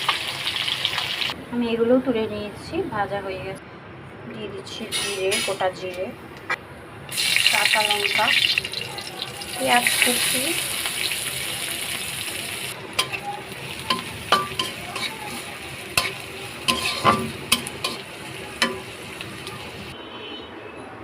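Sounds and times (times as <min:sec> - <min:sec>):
food sizzling in hot oil: 0:00.0 - 0:01.4, 0:07.1 - 0:20.0
spatula scraping a pan: 0:13.9 - 0:18.0.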